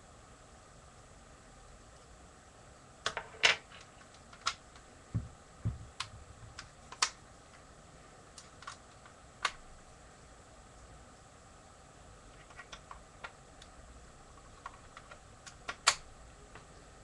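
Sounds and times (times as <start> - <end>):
soft thumps: 5.1 - 6.6
plastic clicks and snaps: 6.0 - 7.2, 8.4 - 9.6, 14.6 - 16.8.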